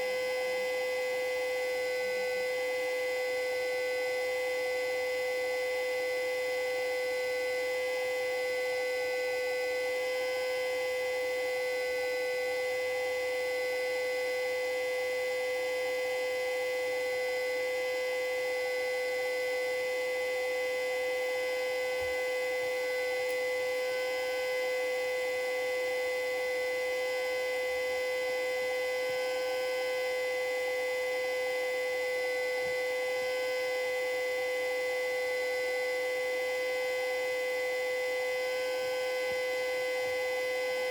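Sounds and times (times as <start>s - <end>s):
warning siren steady tone: 0.0s - 40.9s.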